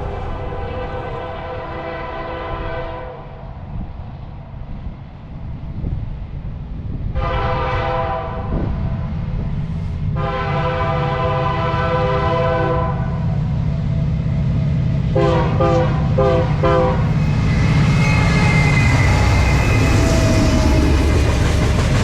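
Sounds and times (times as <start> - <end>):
train rumbling on rails: 0.0 - 22.0
locomotive air horn blasts: 0.4 - 3.2, 7.2 - 8.5, 10.2 - 13.2, 15.1 - 20.9.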